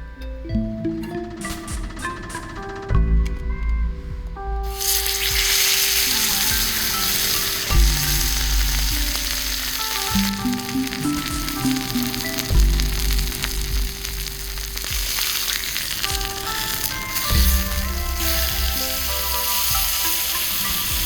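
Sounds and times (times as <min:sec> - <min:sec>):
food sizzling: 0:04.7 - 0:21.0.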